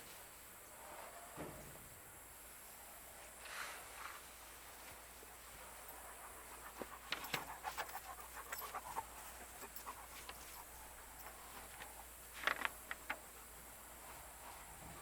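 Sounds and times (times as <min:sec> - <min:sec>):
dog panting: 0:05.2 - 0:12.2.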